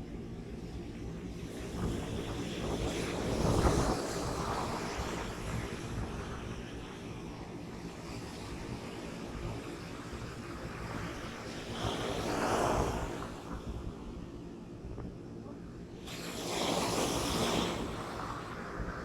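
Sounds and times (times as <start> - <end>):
wind buffeting microphone: 0.2 - 15.3.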